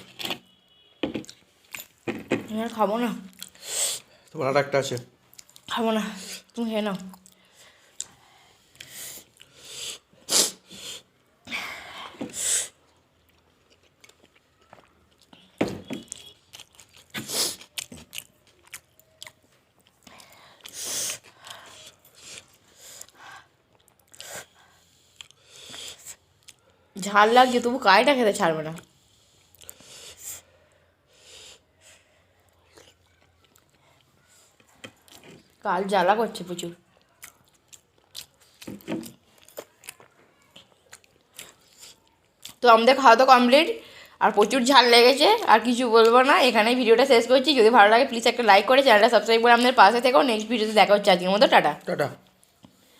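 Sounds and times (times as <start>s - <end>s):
soft chewing: 2.6s - 4.3s, 4.9s - 5.8s, 6.4s - 9.6s, 12.8s - 26.9s, 28.7s - 30.8s, 31.6s - 35.6s, 36.5s - 42.6s, 52.2s - 52.9s
person sniffing and snorting: 3.6s - 4.1s, 8.8s - 11.1s, 17.1s - 17.6s
short hissing breaths: 3.6s - 4.1s, 29.0s - 32.1s.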